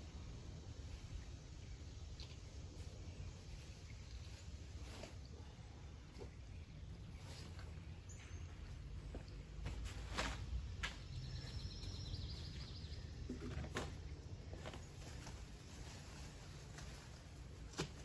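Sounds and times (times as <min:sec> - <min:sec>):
leaves rustling: 0:00.0 - 0:08.1, 0:13.7 - 0:18.0
low outdoor rumble: 0:00.0 - 0:18.0
bird chirping: 0:10.9 - 0:13.6.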